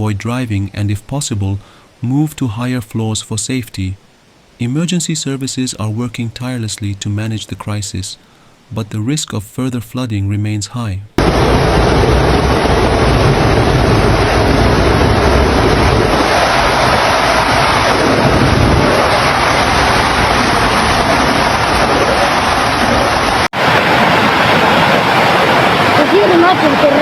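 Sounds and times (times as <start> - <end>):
floodwater rushing: 11.2 - 27.0.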